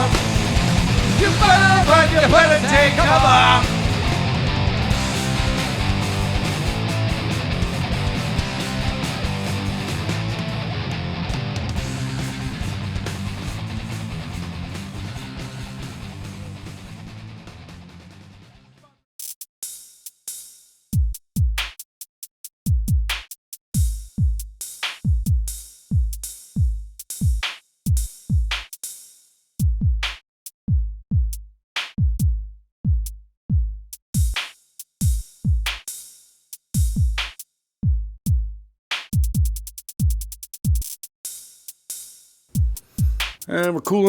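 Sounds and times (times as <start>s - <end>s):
drum machine beat: 0.0s - 10.1s, 19.2s - 44.0s
rapid drum roll: 0.0s - 10.3s, 42.6s - 44.0s
electronic music: 43.0s - 44.0s.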